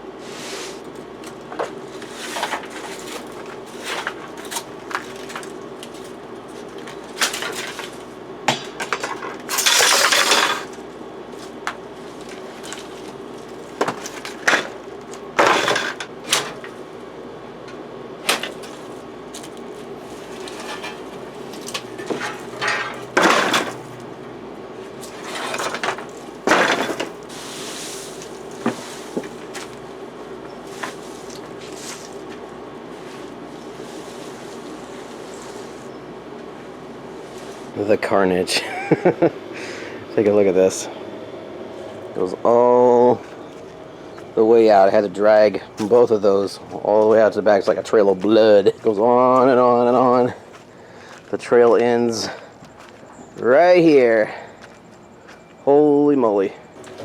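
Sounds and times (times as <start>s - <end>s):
metal tool scraping soil: 1.9s - 5.4s, 20.0s - 21.2s, 25.0s - 25.8s, 26.5s - 29.8s.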